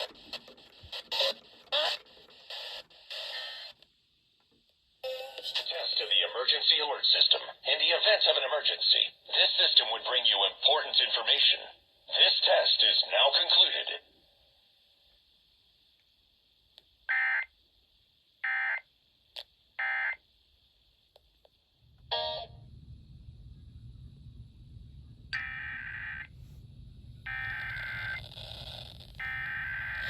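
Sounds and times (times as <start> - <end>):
low hum: 21.6 - 30.0
brief tone: 22.0 - 23.4, 27.2 - 30.0
buzzy modem-like data bursts: 27.2 - 30.0.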